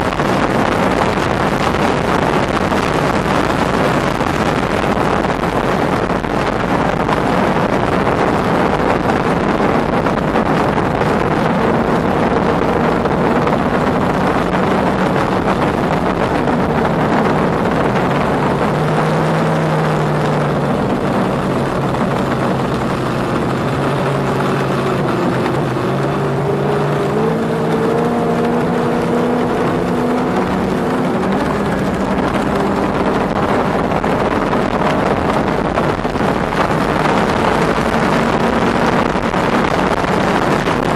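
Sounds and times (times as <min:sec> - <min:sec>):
outboard engine at high speed: 0:00.0 - 0:40.9
wind and water rush: 0:00.0 - 0:40.9.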